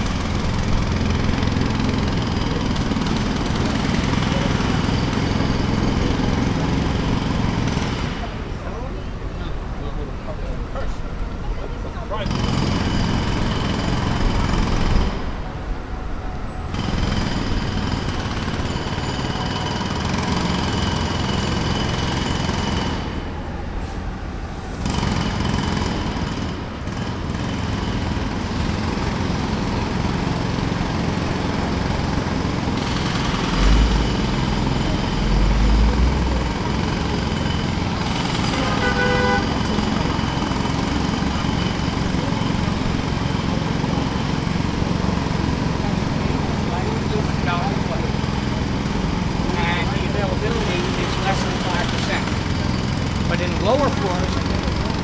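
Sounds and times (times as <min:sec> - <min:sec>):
jackhammer hammering: 0:00.0 - 0:08.8, 0:12.2 - 0:15.5, 0:16.7 - 0:23.6, 0:24.8 - 0:55.0.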